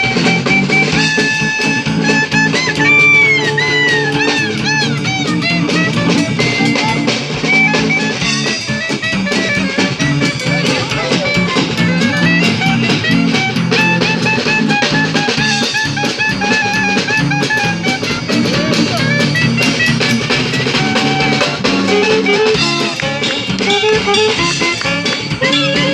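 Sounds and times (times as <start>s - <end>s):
drum kit beat: 0.0s - 25.9s
guitar: 0.0s - 25.9s
lead melody line: 0.0s - 25.9s
street jazz band playing: 0.0s - 25.9s.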